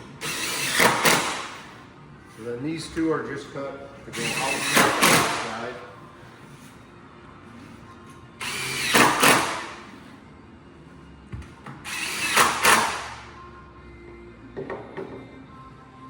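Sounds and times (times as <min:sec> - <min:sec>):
power drill driving screws: 0:00.2 - 0:01.6, 0:04.1 - 0:05.5, 0:08.4 - 0:09.8, 0:11.8 - 0:13.2.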